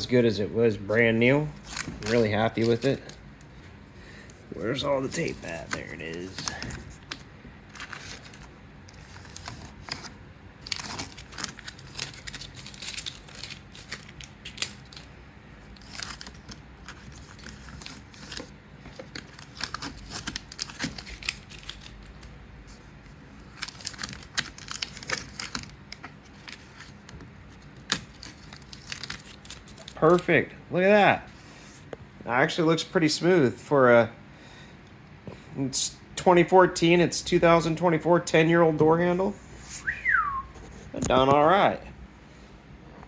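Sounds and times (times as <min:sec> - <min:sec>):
tape peeling and crumpling: 0:01.6 - 0:03.2, 0:04.5 - 0:30.2.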